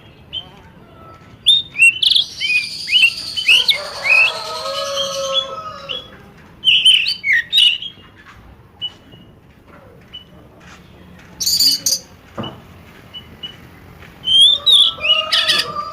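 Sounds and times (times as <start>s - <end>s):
drawn-out low bird call: 0.0s - 8.0s, 14.2s - 15.9s
birds chirping sharply: 0.0s - 8.2s, 11.4s - 15.9s.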